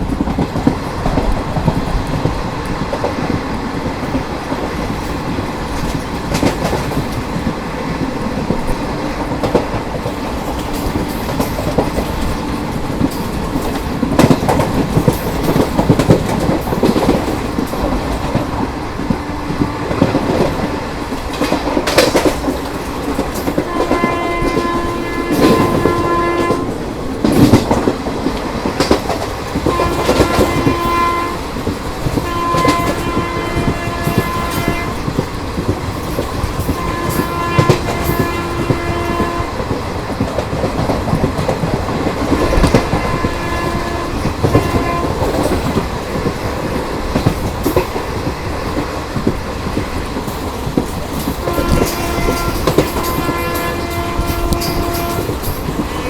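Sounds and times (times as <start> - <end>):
train wheels clickety-clack: 0.0 - 56.0
locomotive horn blasts: 23.5 - 26.8, 29.6 - 35.2, 36.6 - 39.7, 42.4 - 45.7, 51.4 - 56.0.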